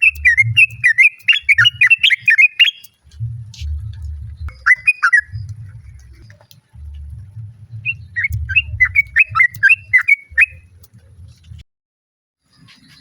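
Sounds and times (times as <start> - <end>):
low rumble: 0.0 - 2.0, 2.9 - 11.6
bird chattering call: 0.0 - 3.0, 4.5 - 5.4, 7.8 - 10.6.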